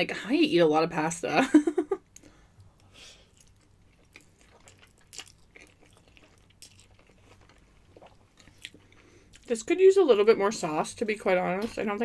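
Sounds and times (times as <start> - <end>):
person chewing: 2.2 - 9.5.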